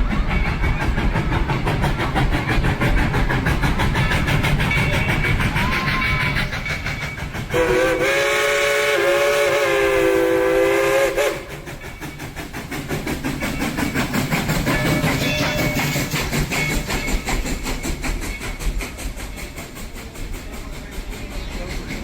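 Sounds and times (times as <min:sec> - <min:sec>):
rhythmic train clatter: 0:00.0 - 0:22.0
steam locomotive chime whistle: 0:04.8 - 0:12.4.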